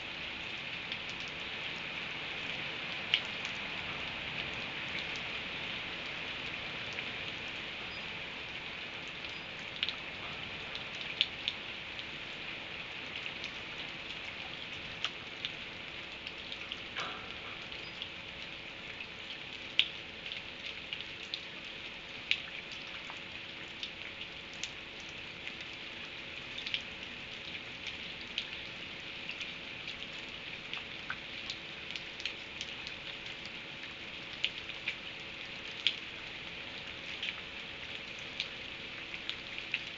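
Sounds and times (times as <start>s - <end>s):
steady rain falling: 0.0s - 39.9s
sharp drip ticks: 13.1s - 36.1s.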